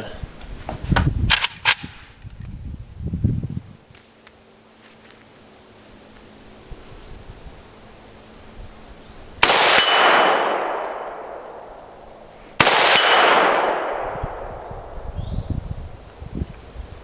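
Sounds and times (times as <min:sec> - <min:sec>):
rifle shots with echoing tail: 0:09.4 - 0:12.0, 0:12.6 - 0:15.0.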